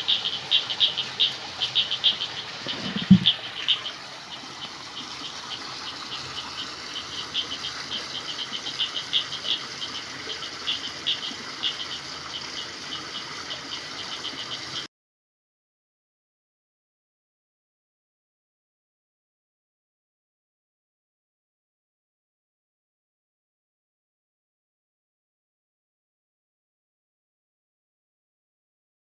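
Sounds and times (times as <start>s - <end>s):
frogs chirping: 0.0s - 14.9s.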